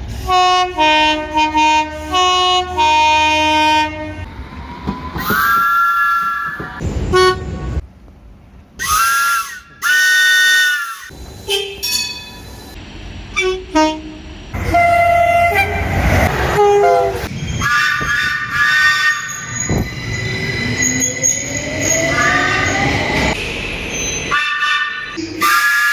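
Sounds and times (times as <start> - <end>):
train horn blasts: 0.2 - 4.2, 13.3 - 15.8, 16.6 - 19.4, 24.3 - 25.9.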